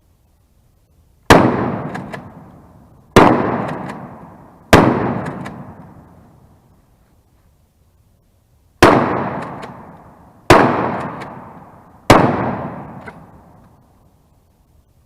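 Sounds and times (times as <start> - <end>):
shotgun shots: 1.3 - 2.5, 3.1 - 6.1, 8.8 - 13.5.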